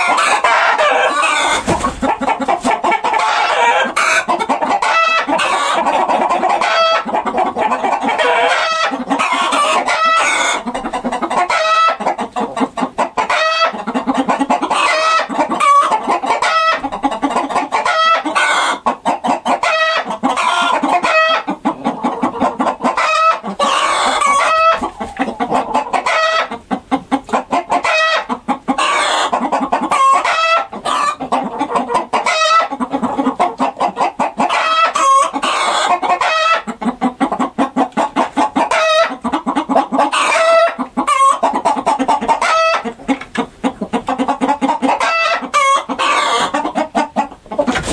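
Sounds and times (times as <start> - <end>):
chickens clucking: 0.0 - 47.9.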